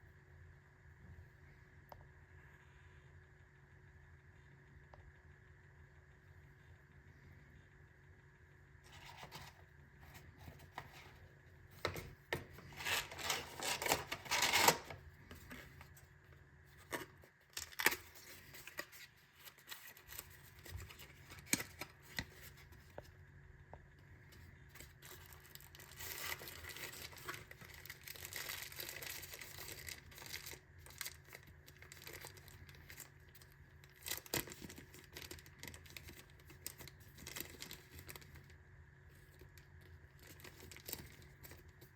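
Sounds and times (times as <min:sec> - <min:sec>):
packaging crinkling and tearing: 0:11.8 - 0:15.7, 0:16.8 - 0:22.7, 0:24.8 - 0:38.5, 0:39.2 - 0:41.9.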